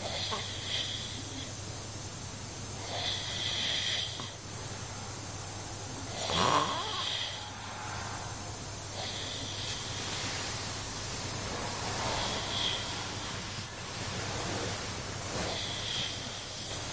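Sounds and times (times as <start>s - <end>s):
soft hissing breaths: 0.0s - 16.9s
man snoring heavily: 6.1s - 7.6s, 15.2s - 16.9s.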